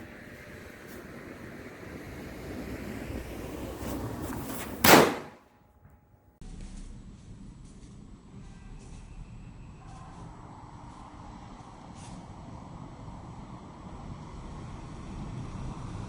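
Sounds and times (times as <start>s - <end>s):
firecracker bang: 3.9s - 5.4s.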